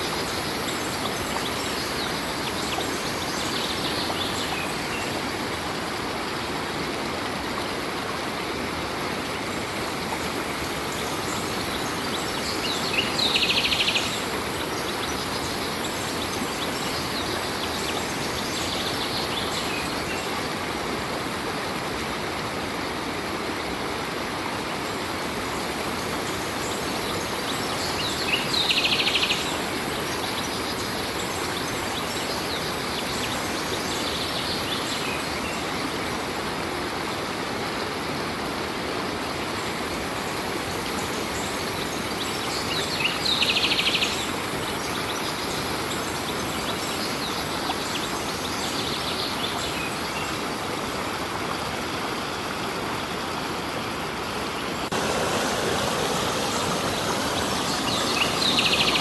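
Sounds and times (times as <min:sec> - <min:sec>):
stream water flowing: 0:00.0 - 0:59.0
birds chirping: 0:54.6 - 0:59.0.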